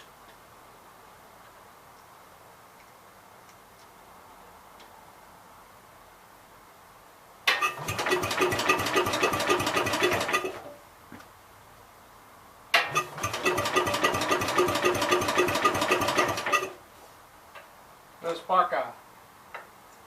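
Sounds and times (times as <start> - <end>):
engine cranking on starter: 7.5 - 10.7, 12.8 - 16.8.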